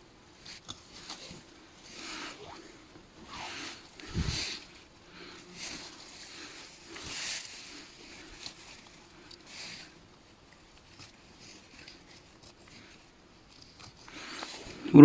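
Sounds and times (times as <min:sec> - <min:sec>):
rustling and crunching handling: 0:03.1 - 0:14.8.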